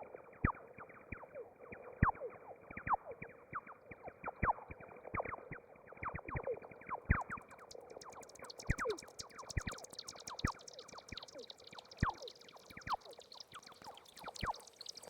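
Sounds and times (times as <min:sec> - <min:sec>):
high crackle of rapid clicks: 0:07.2 - 0:15.0.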